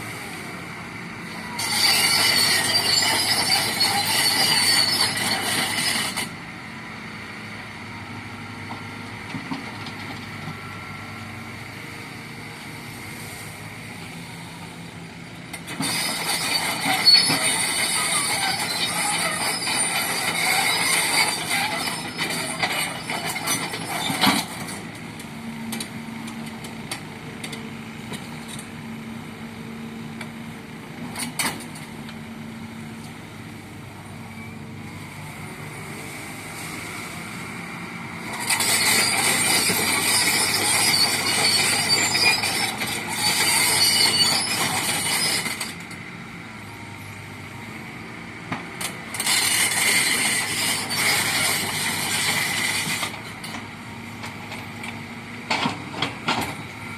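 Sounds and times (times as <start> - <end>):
excavator diesel engine running: 0.0 - 56.9
harsh metallic grinding and squealing: 1.5 - 6.3, 15.7 - 24.8, 38.3 - 45.8, 49.1 - 53.5.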